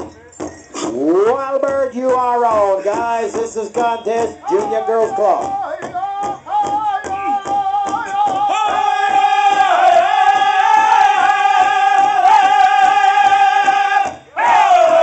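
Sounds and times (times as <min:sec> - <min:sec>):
steady drumbeat: 0:00.0 - 0:15.0
high voices singing in unison: 0:06.2 - 0:15.0.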